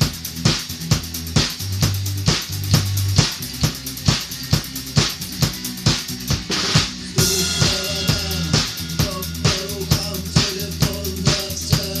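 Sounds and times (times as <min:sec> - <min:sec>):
drum kit beat: 0:00.0 - 0:12.0
cymbal crash: 0:06.6 - 0:10.7
sustained pitched notes: 0:07.0 - 0:11.0.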